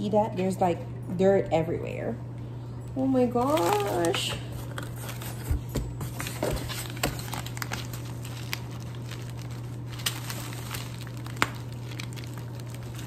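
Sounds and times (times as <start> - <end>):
packaging crinkling and rustling: 3.3 - 13.0.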